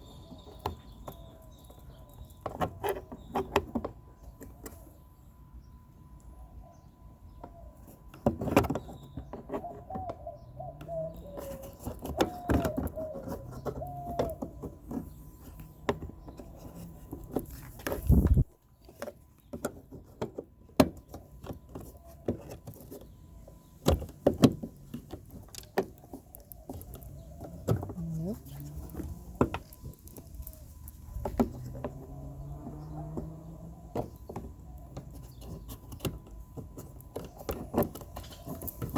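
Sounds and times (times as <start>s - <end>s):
plastic parts clicking and rattling: 11.4s - 33.3s, 33.9s - 38.9s.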